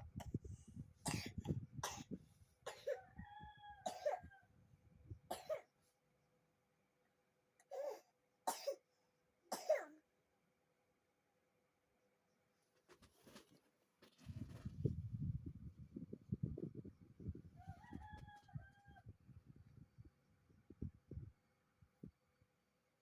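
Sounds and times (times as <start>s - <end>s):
child coughing: 1.1s - 3.0s, 3.9s - 4.3s, 5.3s - 5.7s, 7.6s - 8.9s, 9.5s - 10.0s.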